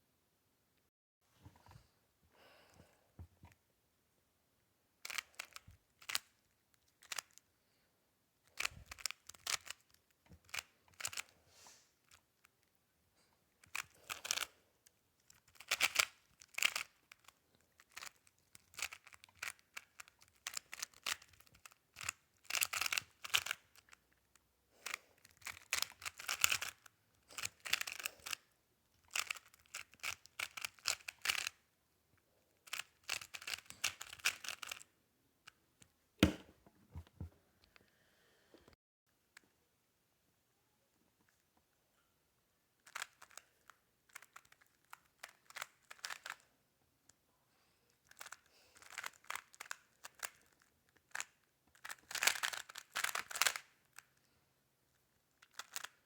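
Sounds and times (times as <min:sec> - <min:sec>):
puzzle cube plastic clicking: 0:05.0 - 0:07.5, 0:08.5 - 0:11.3, 0:13.6 - 0:14.5, 0:15.2 - 0:31.6, 0:32.6 - 0:34.9, 0:42.8 - 0:46.4, 0:48.1 - 0:54.2, 0:55.4 - 0:56.0.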